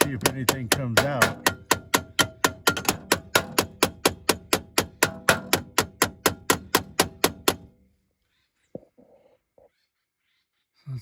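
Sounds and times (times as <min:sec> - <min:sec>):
rapid metallic tapping: 0:00.0 - 0:07.7.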